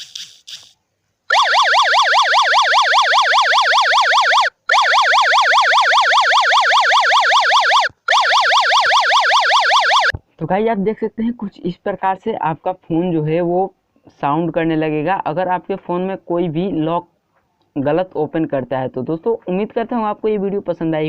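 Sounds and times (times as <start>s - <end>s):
warbling siren from phone loudspeaker: 1.3s - 10.1s.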